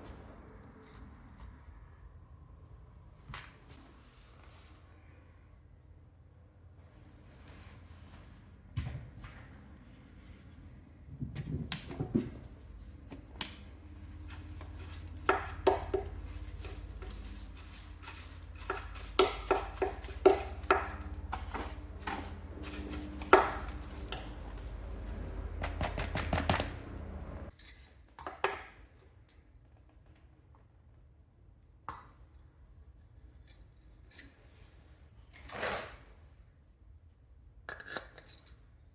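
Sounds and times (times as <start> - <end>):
low steady hum: 9.8 - 27.5.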